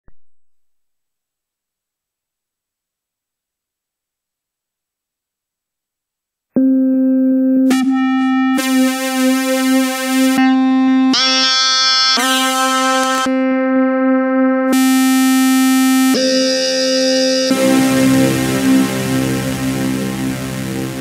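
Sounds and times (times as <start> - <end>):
synthesizer single note changing tones: 6.6 - 21.0.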